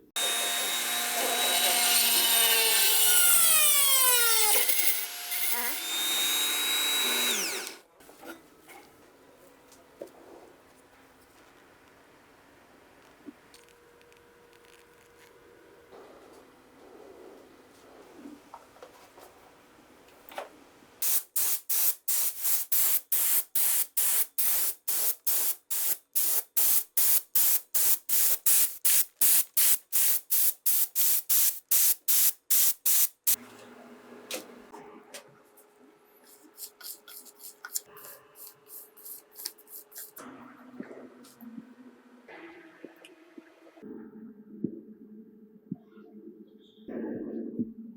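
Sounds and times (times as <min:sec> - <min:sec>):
spray paint hissing bursts: 0:21.0 - 0:33.4.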